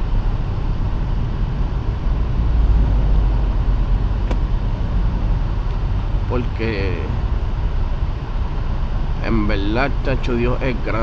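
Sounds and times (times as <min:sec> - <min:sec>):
car engine and tyre rumble: 0:00.0 - 0:11.0
sharp click: 0:04.2 - 0:04.5.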